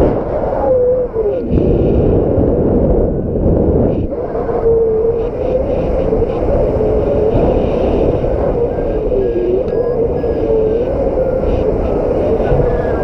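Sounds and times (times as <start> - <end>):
wind buffeting microphone: 0.0 - 13.0
faint wavering whistle: 4.5 - 13.0.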